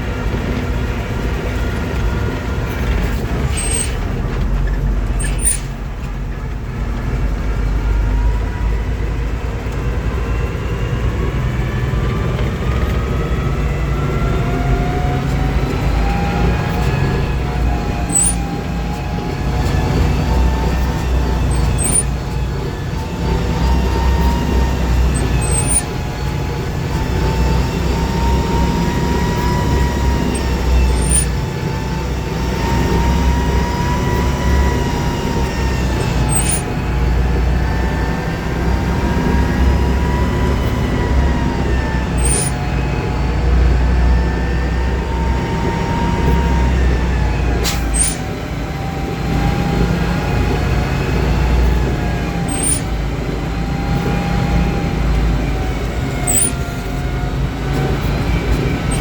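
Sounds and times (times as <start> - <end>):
tractor diesel engine running: 0.0 - 59.0
brief clicks: 47.7 - 48.3.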